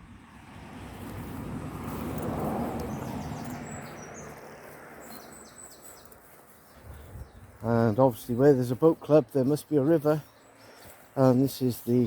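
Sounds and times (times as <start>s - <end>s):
vehicle passing on road: 0.0s - 12.0s
small birds chirping: 1.0s - 12.0s.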